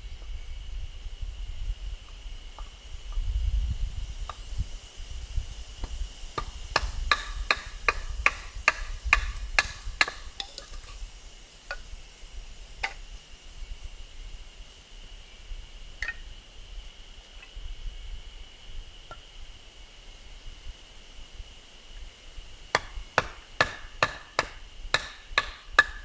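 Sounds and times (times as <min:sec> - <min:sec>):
firewood splitting knocks: 0:22.8 - 0:26.0.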